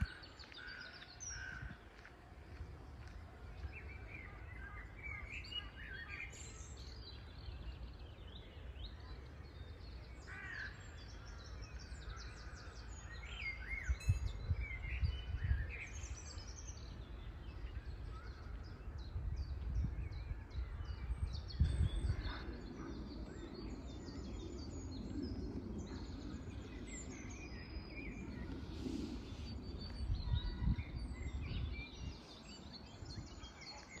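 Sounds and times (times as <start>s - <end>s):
birds chirping and trilling: 0.0s - 2.0s, 3.6s - 34.0s
steady low rumble: 10.8s - 33.4s.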